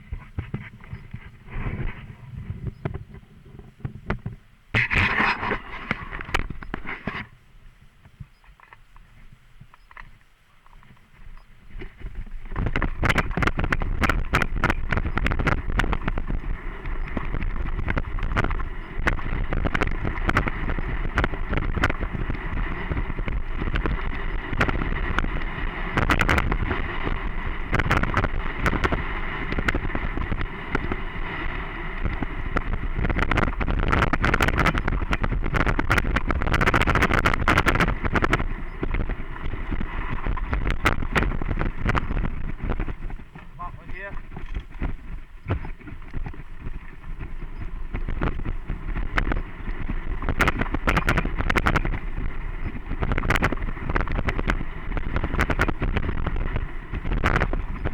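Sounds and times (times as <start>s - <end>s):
bike tyres rumbling on dirt: 0.0s - 8.2s, 10.2s - 57.9s
wind buffeting microphone: 0.0s - 10.2s, 10.8s - 57.9s
bike rattling and knocking: 11.7s - 57.9s.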